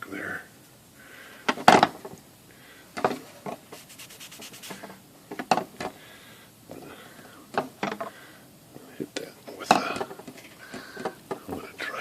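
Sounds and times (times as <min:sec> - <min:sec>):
quick rubbing on painted cover: 0:03.7 - 0:05.0.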